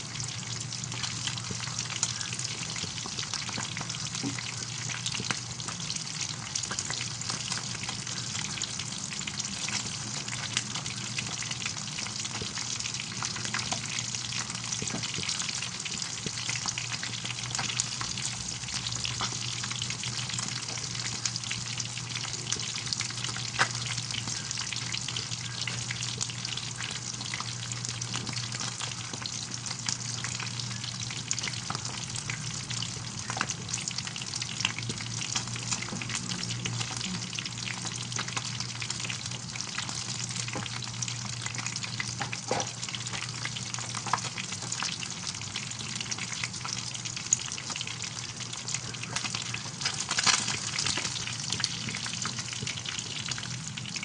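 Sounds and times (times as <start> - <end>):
fish sizzling in hot oil: 0.0 - 54.0.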